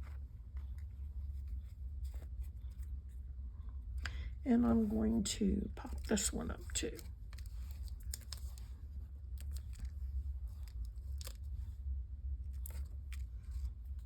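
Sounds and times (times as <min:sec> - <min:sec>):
low steady hum: 0:00.0 - 0:14.0
paper rustling and tearing: 0:05.8 - 0:11.7.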